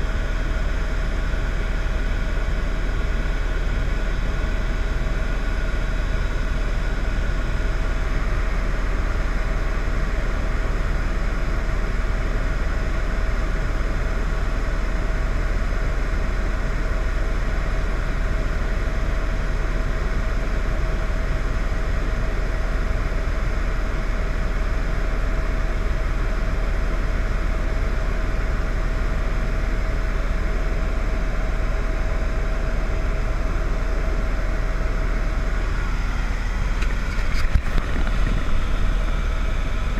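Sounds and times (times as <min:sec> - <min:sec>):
vehicle engine rumble: 0:27.5 - 0:39.9.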